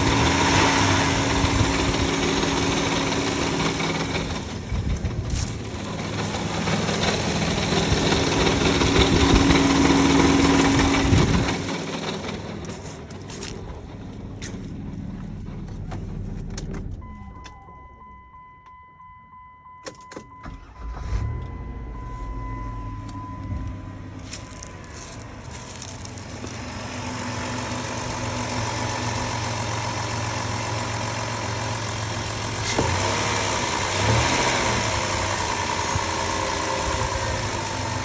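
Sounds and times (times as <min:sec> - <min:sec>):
car engine starting and idling: 0:00.0 - 0:38.0
chime tone: 0:21.4 - 0:25.4.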